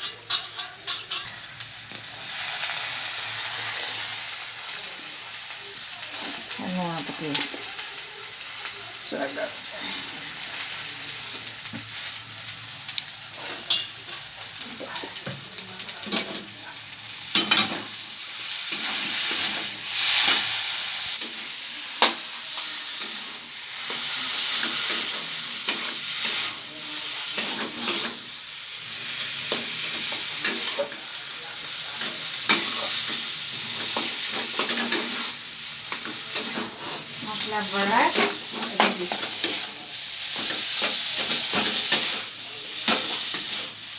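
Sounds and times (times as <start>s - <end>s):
food sizzling in oil: 0.0s - 43.9s
spatula scraping a pan: 13.3s - 15.3s, 17.3s - 28.4s, 31.8s - 43.8s.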